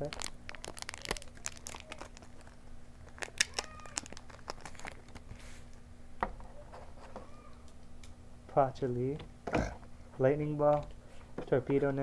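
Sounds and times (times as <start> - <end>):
wrapper crinkling and tearing: 0.0 - 5.3.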